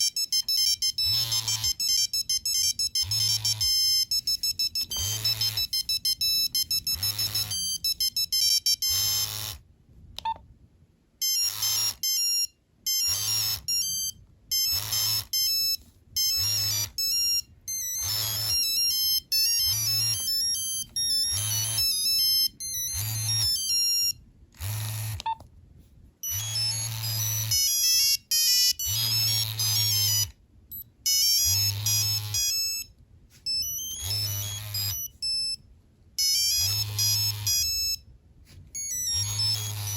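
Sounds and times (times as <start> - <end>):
monophonic beeping ringtone: 0.0 - 9.6, 11.2 - 25.4, 26.2 - 35.6, 36.2 - 38.1, 38.8 - 39.9.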